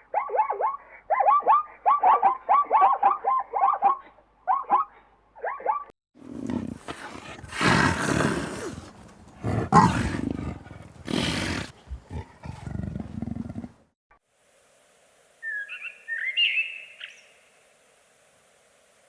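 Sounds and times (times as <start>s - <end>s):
large animal deep rough calls: 6.2s - 13.8s.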